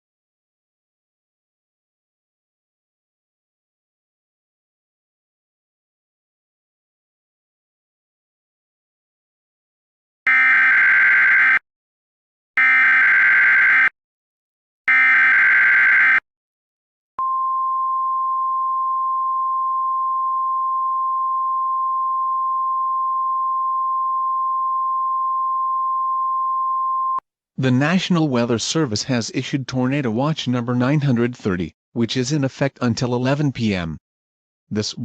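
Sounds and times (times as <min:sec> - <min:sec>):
steady warning alarm tone: 0:10.3 - 0:11.6, 0:12.6 - 0:13.9, 0:14.9 - 0:16.2.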